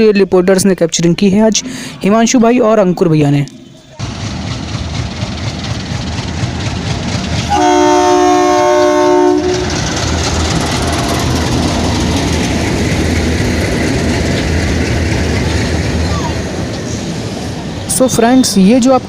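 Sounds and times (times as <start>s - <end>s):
train rumbling and clattering: 4.0s - 19.0s
locomotive horn blast: 7.4s - 9.8s.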